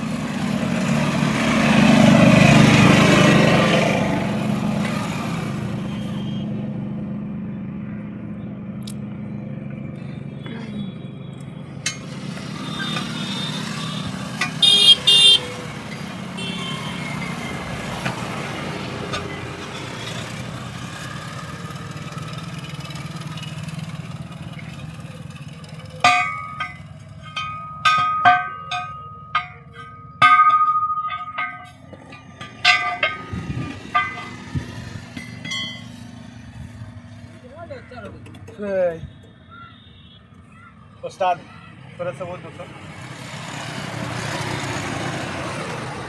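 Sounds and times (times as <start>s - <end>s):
road traffic: 0.0s - 46.0s
vehicle horn toots: 12.5s - 17.3s, 39.0s - 40.4s
hammer clanging on steel: 26.0s - 36.2s.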